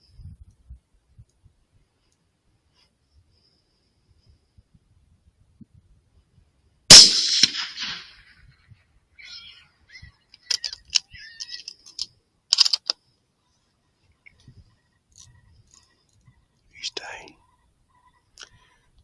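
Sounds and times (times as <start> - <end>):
rifle shot: 6.9 - 8.2
sharp clicks and rustles: 10.3 - 13.0.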